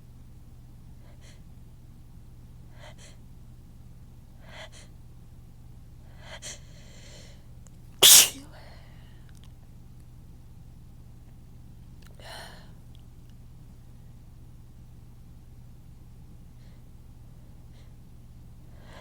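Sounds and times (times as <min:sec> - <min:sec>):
catching inhales: 0:08.0 - 0:08.4
loud sneeze: 0:08.0 - 0:08.4.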